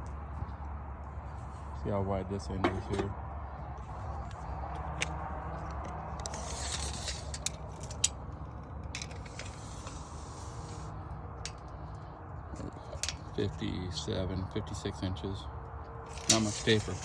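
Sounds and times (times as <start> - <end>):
rustling hiss from handling: 9.2 - 11.0, 16.1 - 17.0.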